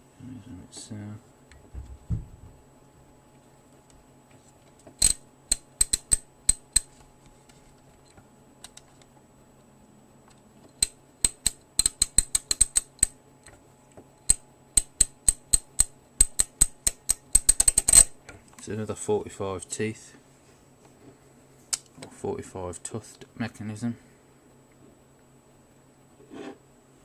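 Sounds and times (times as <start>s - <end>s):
ratchet pawl clicking: 5.0s - 6.9s, 11.2s - 13.1s, 14.3s - 18.1s.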